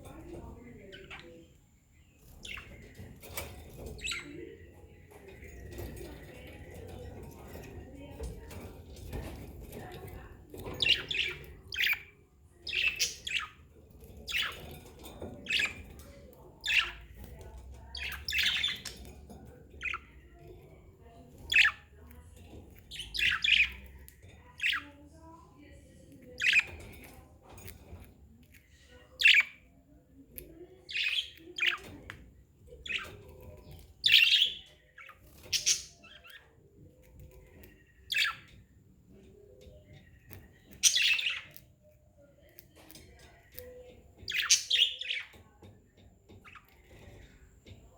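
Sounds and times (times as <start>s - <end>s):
budgerigars chirping: 2.1s - 4.6s, 16.6s - 19.1s, 22.8s - 24.0s, 32.7s - 36.4s, 37.2s - 38.5s, 39.7s - 41.7s, 44.2s - 45.3s.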